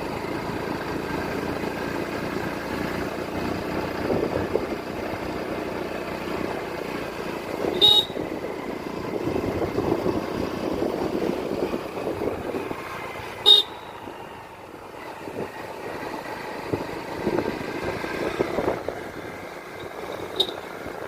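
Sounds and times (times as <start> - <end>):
motorcycle running: 0.0 - 21.0
motorcycle horn toot: 7.6 - 8.4, 13.4 - 14.1, 20.3 - 20.6.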